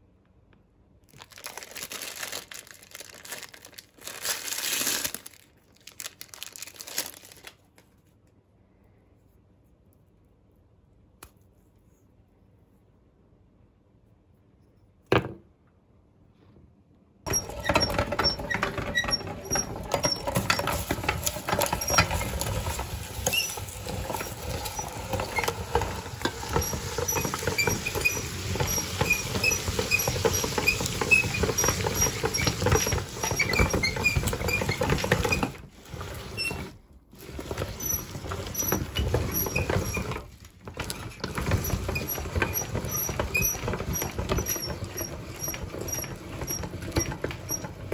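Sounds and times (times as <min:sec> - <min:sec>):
meat grinder crackling and squishing: 0:01.1 - 0:07.6, 0:17.3 - 0:47.9.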